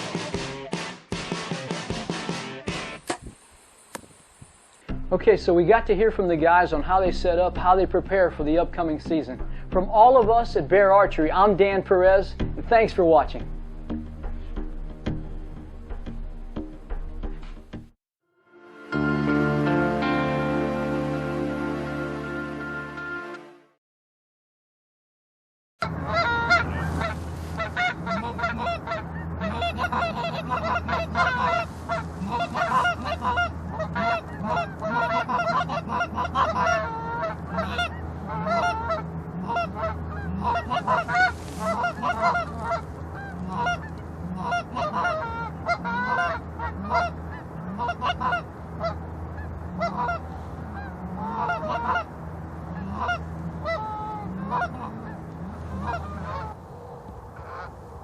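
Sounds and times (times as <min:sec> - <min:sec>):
geese honking: 0:25.8 - 0:56.6, 0:57.4 - 0:57.8
low hum: 0:25.8 - 0:58.0.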